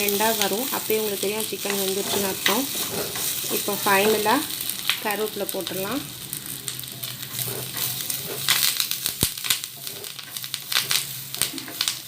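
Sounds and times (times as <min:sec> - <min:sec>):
leaves crackling and sizzling in pan: 0:00.0 - 0:12.0
spoon stirring and scraping: 0:01.6 - 0:04.3, 0:07.1 - 0:12.0.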